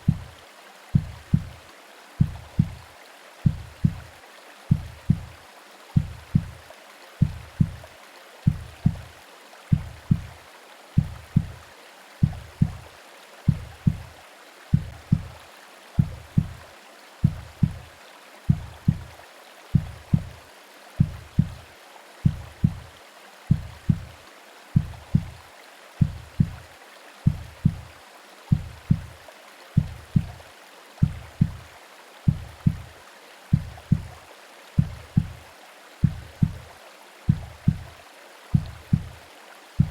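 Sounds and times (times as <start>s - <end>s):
heartbeat thumps: 0.0s - 1.6s, 2.2s - 5.4s, 6.0s - 10.4s, 11.0s - 11.6s, 12.2s - 12.9s, 13.5s - 15.4s, 16.0s - 16.6s, 17.2s - 17.9s, 18.5s - 20.4s, 21.0s - 21.6s, 22.2s - 24.2s, 24.8s - 25.4s, 26.0s - 27.9s, 28.5s - 29.2s, 29.8s - 30.4s, 31.0s - 31.7s, 32.3s - 34.2s, 34.8s - 36.7s, 37.3s - 39.2s
rain: 0.0s - 39.9s
white noise hiss: 0.0s - 39.9s.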